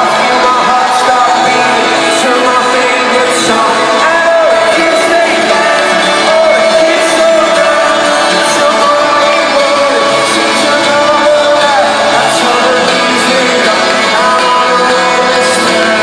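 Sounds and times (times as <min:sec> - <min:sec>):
crowd shouting and cheering: 0:00.0 - 0:16.0
live rock band playing: 0:00.0 - 0:16.0
person singing: 0:00.0 - 0:16.0.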